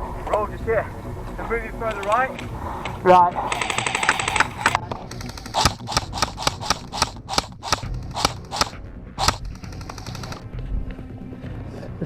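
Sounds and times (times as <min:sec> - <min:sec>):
airsoft rifle shots: 0:03.4 - 0:10.4.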